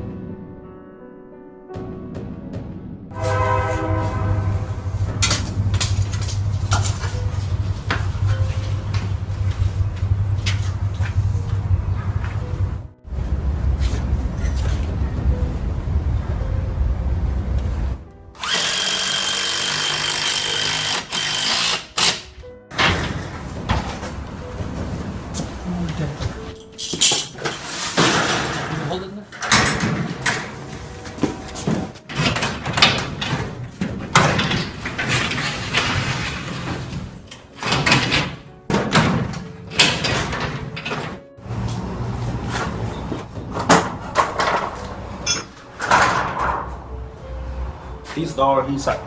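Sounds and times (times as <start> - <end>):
garage door rattling and rumbling: 4.6 - 16.2, 22.0 - 47.0
power drill whining: 18.4 - 22.2.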